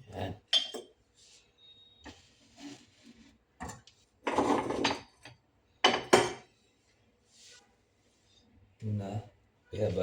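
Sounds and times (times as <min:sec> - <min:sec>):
kitchen items clattering: 0:03.6 - 0:05.3.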